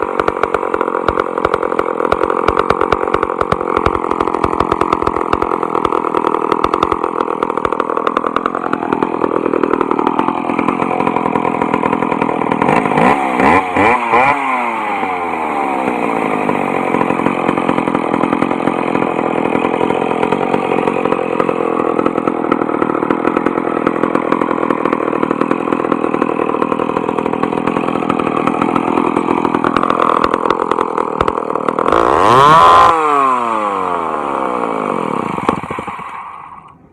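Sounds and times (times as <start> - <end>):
chainsaw engine idling and revving: 0.0 - 36.9.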